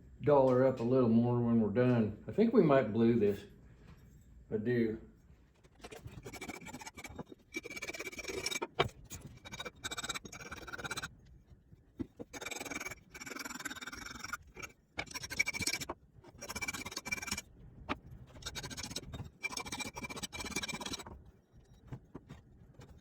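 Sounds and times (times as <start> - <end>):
file scraping steel: 5.6 - 11.2, 12.0 - 17.5, 18.3 - 23.0.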